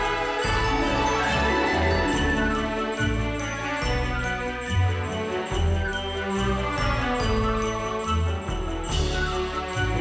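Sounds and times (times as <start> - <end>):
pulsing bass line: 0.0 - 7.7
instrumental christmas music: 0.0 - 10.0
jangling sleigh chimes in christmas music: 0.0 - 10.0.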